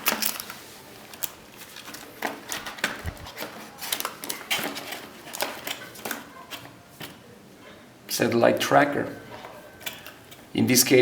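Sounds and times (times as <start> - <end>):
plastic parts clicking and rustling: 0.0 - 7.3, 9.3 - 10.5.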